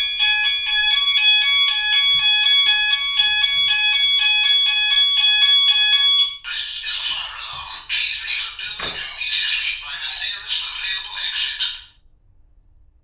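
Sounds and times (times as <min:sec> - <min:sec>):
two-tone fire alarm: 0:00.0 - 0:06.6
steady high alarm tone: 0:00.0 - 0:07.7.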